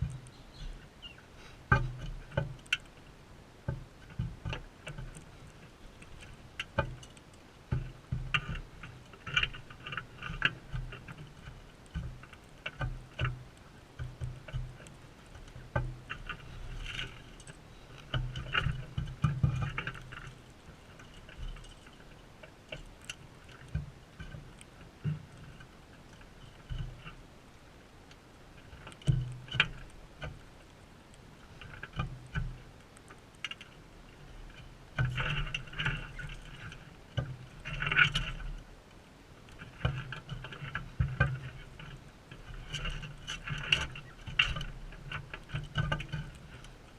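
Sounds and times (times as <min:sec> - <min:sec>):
beaks and feet tapping feeder: 0:00.0 - 0:16.6.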